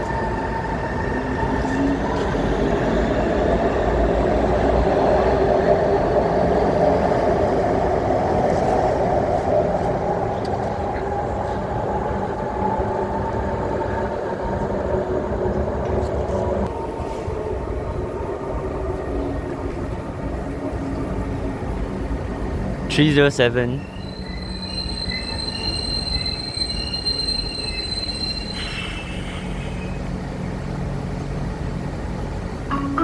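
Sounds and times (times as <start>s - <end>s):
metro train motor whine: 23.9s - 33.0s.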